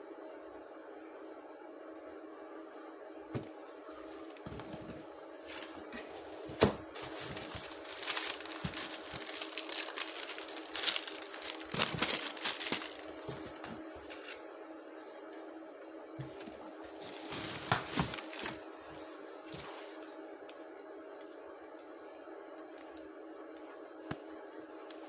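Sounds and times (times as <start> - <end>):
steady low hum: 0.0 - 25.0
plastic packaging crinkling and tearing: 4.1 - 14.4, 16.9 - 18.8.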